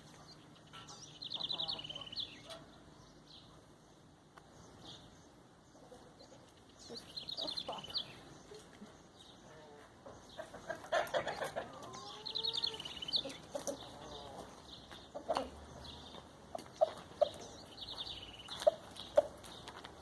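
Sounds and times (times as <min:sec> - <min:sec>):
chickens clucking and calling: 0:05.7 - 0:19.8.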